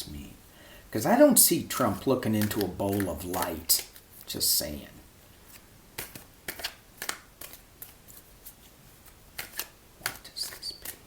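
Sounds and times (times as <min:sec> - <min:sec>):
cards being shuffled: 0:01.9 - 0:04.1, 0:05.5 - 0:11.0.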